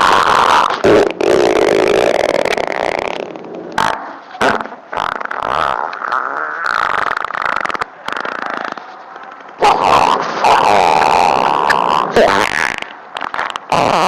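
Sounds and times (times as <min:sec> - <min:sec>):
farts: 0:00.0 - 0:08.9, 0:09.7 - 0:14.0.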